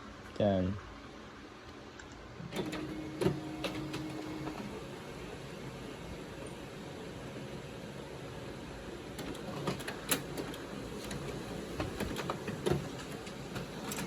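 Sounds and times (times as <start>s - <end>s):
printer whirring: 2.2s - 14.0s
sharp printer clicks: 2.5s - 4.7s, 9.2s - 14.0s.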